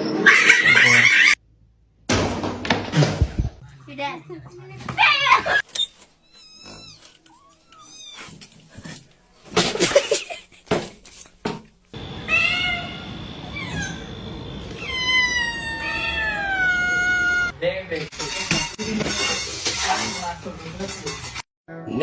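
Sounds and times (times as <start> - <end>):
cats meowing: 3.6 - 9.0, 12.2 - 17.5.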